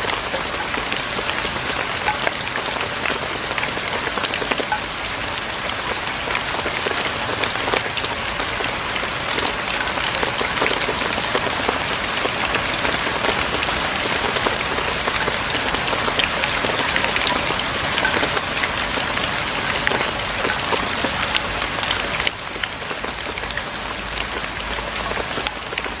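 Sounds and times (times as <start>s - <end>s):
rain on roof tiles: 0.0s - 26.0s.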